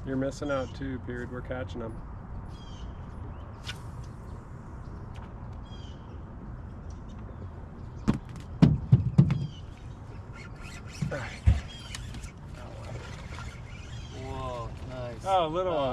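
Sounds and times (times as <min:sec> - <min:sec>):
birds chirping: 0:00.0 - 0:15.8
knocks and thumps: 0:08.0 - 0:09.6, 0:10.9 - 0:11.8.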